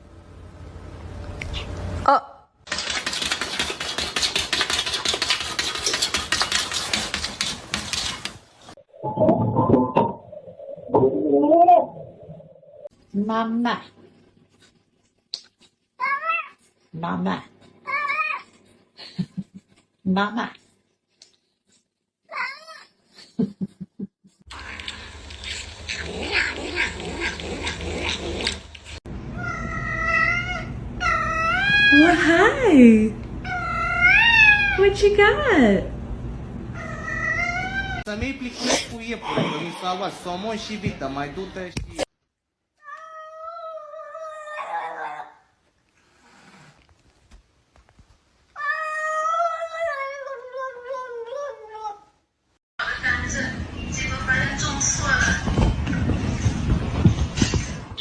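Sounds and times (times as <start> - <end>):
low background hum: 0.0 - 5.0, 23.0 - 42.1
quick repeated noisy sounds: 2.7 - 8.6
cat yowling: 29.4 - 32.1, 33.4 - 34.8, 36.8 - 38.0, 42.8 - 45.4.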